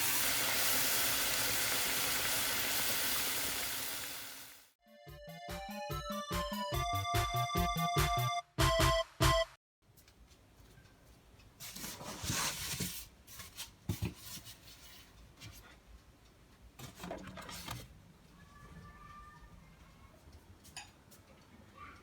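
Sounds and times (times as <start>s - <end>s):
items rubbing and rustling: 10.0s - 15.9s, 16.8s - 18.0s.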